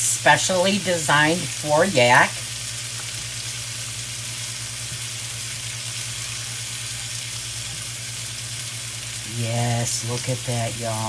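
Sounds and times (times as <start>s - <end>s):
food sizzling: 0.0s - 11.0s.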